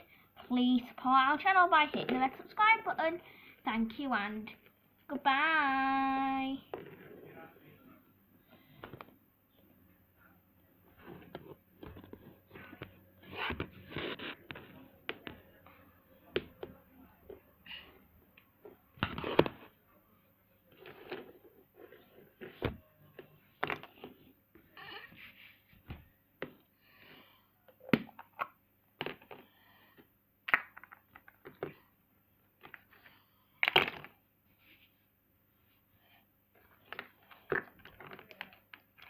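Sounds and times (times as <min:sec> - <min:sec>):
objects knocking and rustling: 0:10.9 - 0:17.4, 0:30.5 - 0:31.9, 0:36.6 - 0:39.0.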